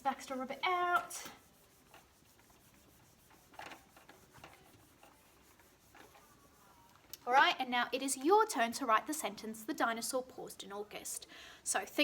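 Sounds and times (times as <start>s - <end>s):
eraser rubbing whiteboard: 0.3s - 7.0s.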